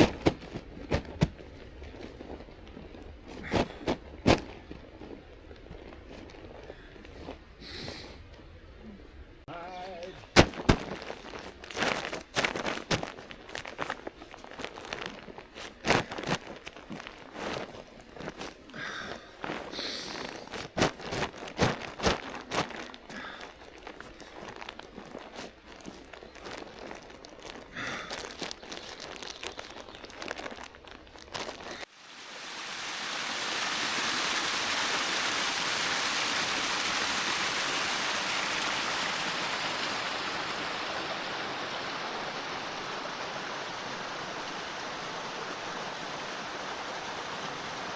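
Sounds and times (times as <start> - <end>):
camping gear rustling and knocking: 0.0 - 7.6, 10.2 - 31.9
brook rushing: 31.9 - 47.9.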